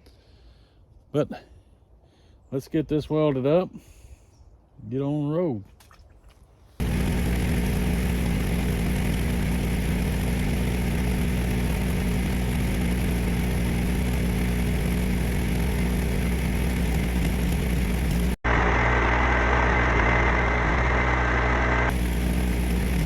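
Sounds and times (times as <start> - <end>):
welder engine running: 6.8 - 23.0.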